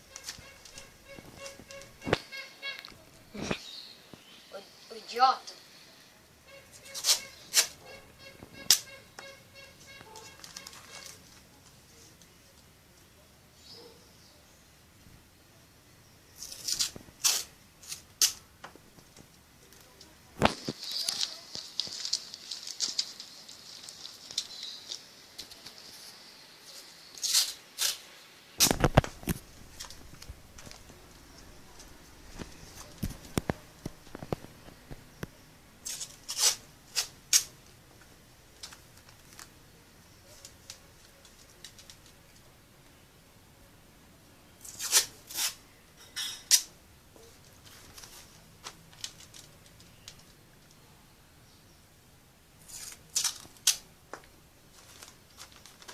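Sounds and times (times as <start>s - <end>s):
rasping of paper and tape: 0.1s - 2.2s, 6.5s - 11.4s, 16.4s - 18.4s, 25.8s - 28.8s, 35.8s - 37.5s, 44.6s - 45.6s, 52.6s - 53.8s
short rasps: 6.5s - 11.2s
faint rustling: 16.3s - 42.5s.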